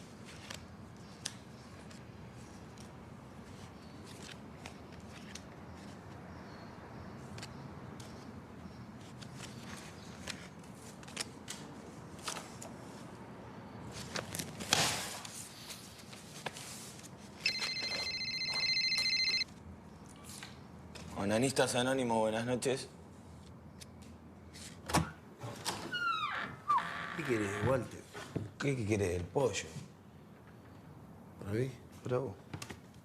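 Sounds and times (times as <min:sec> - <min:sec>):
telephone ringing: 0:17.4 - 0:19.5.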